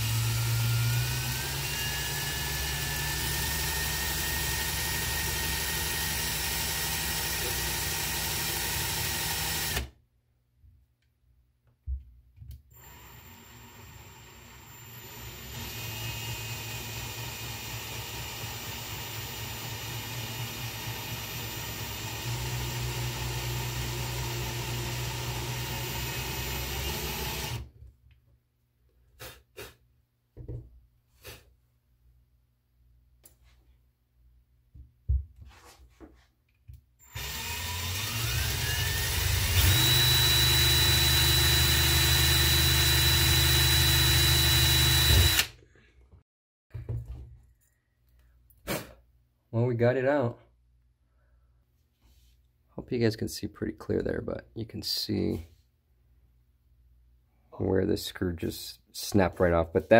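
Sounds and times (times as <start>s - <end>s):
power drill spinning: 0.0s - 9.9s, 12.7s - 27.7s, 37.0s - 45.6s.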